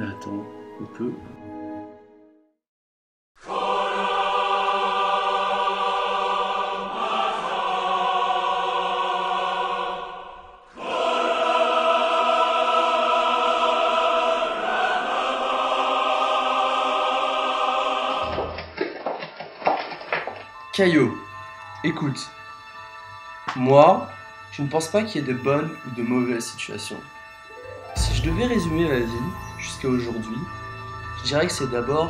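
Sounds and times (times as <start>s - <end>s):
choir singing sustained chords: 3.4s - 18.6s, 21.2s - 32.0s.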